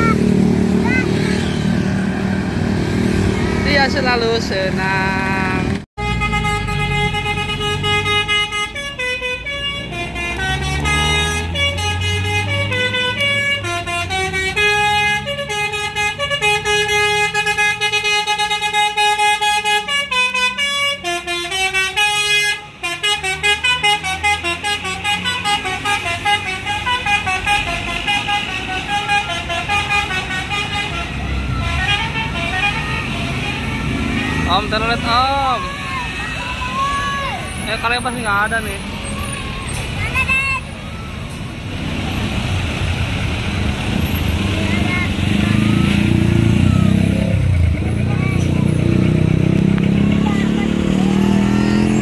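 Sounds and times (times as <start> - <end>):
bus engine: 0.0 - 52.0
bus horn playing melody: 6.0 - 34.2.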